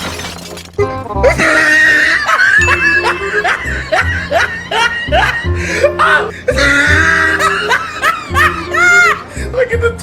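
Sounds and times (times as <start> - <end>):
laughter: 2.0 - 6.2, 7.1 - 9.2.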